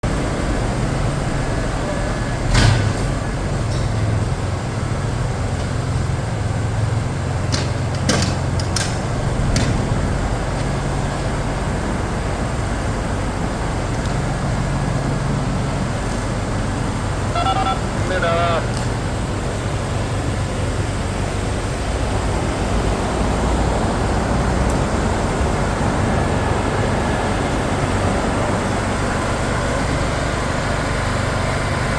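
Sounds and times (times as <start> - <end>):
machine engine humming: 0.0 - 31.9
sharp metallic clicks and knocks: 7.5 - 9.9.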